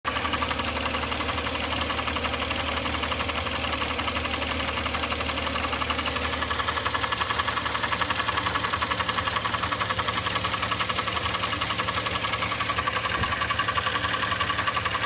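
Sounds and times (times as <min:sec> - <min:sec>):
car engine idling: 0:00.1 - 0:15.0
fast even engine knocking: 0:00.1 - 0:15.0.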